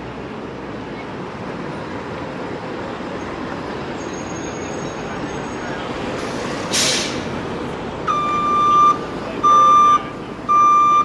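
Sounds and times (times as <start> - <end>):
bus running noise: 0.0 - 11.0
traffic: 0.0 - 11.0
air release hiss: 6.2 - 7.3
electronic warning beeps: 8.1 - 11.0.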